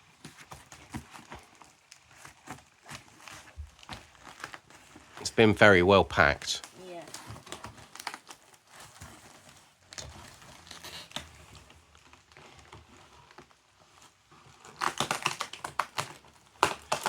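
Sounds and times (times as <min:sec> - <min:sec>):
bubble wrap crinkling: 0:00.0 - 0:17.0.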